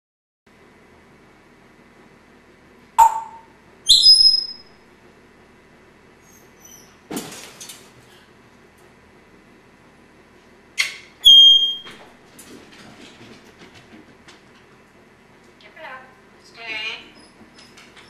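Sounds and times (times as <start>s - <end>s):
parrot call: 3.0s - 4.6s
harsh noisy parrot sound: 3.0s - 4.7s
parrot whistle: 3.0s - 4.7s, 11.2s - 11.9s.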